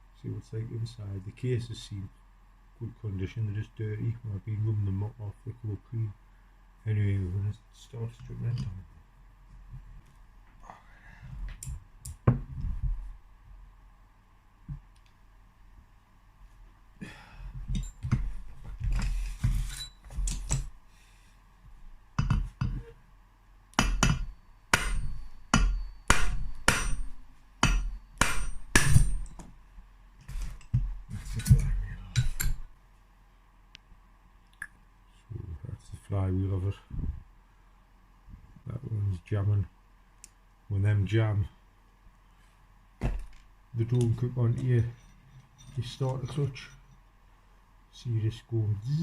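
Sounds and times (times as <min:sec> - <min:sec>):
hammer striking metal: 0:23.8 - 0:29.4.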